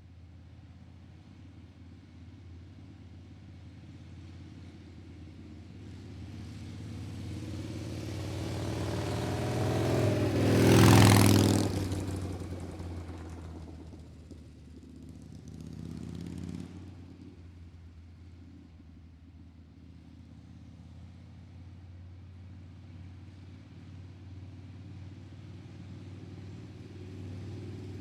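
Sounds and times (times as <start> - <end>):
vehicle engine passing by: 5.9 - 17.4.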